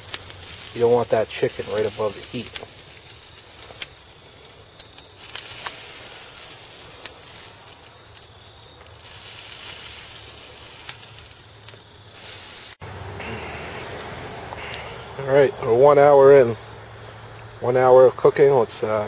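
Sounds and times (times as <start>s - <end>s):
fire crackling and popping: 0.0s - 12.8s
grill sizzling hiss: 0.0s - 17.6s.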